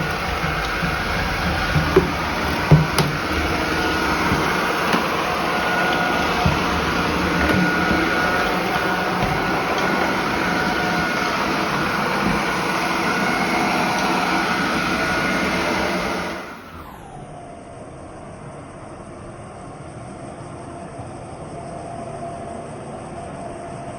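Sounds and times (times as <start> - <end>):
robot vacuum cleaner whirring: 0.0 - 17.5.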